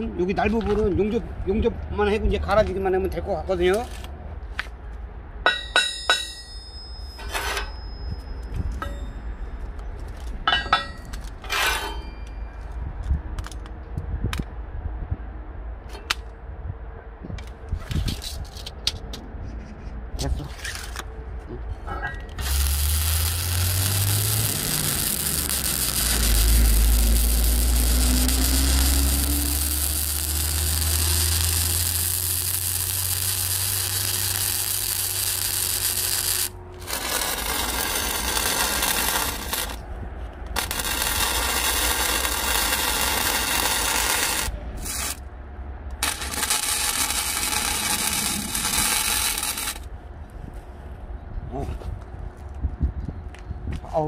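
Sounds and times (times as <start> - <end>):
arc welding hiss and hum: 22.3 - 39.8, 40.5 - 45.2, 45.9 - 49.9.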